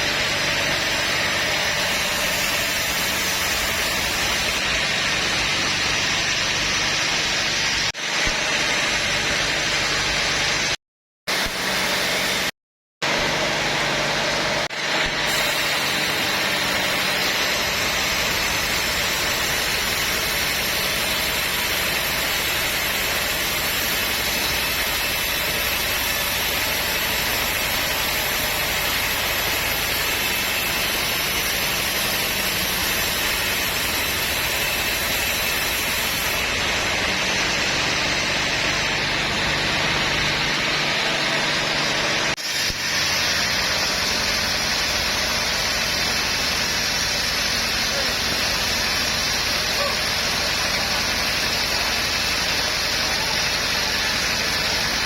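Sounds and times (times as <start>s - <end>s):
sawmill machinery running: 0.0s - 55.0s
engine hum: 36.3s - 46.4s.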